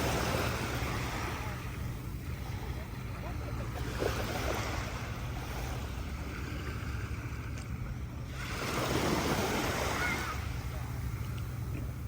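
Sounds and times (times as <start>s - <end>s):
small waves breaking on beach: 0.0s - 12.0s.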